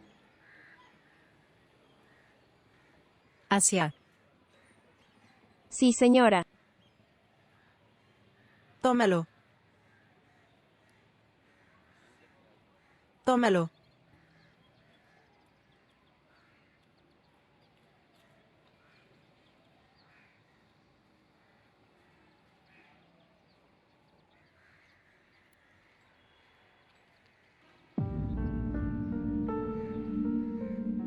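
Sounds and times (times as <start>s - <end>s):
faint outdoor ambience: 0.0s - 31.0s
crow-like caws: 0.4s - 1.4s, 9.8s - 13.2s, 20.0s - 20.6s, 24.4s - 25.9s.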